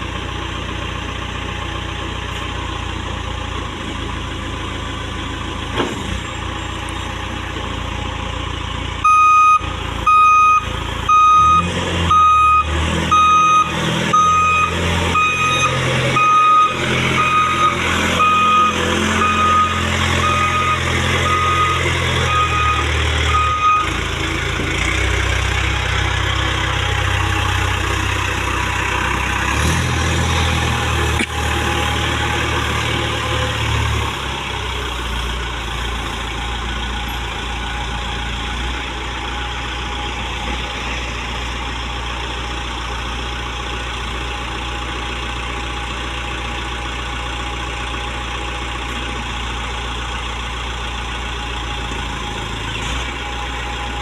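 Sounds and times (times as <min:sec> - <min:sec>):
diesel engine running: 0:00.0 - 0:54.0
reverse alarm beeping: 0:09.0 - 0:24.0.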